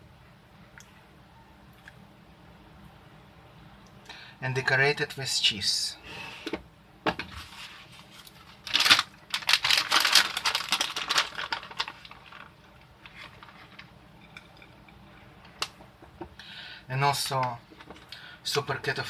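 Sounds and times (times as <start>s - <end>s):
packaging crinkling: 7.5s - 14.6s.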